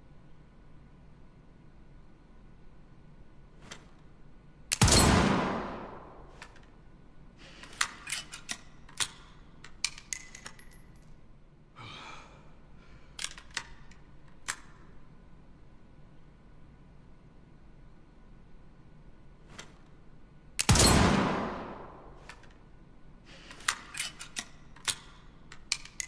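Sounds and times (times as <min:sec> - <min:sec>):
pistol shot: 0:04.7 - 0:06.3, 0:20.6 - 0:22.2
metallic clicks: 0:07.6 - 0:11.2, 0:13.1 - 0:15.0, 0:23.4 - 0:26.0.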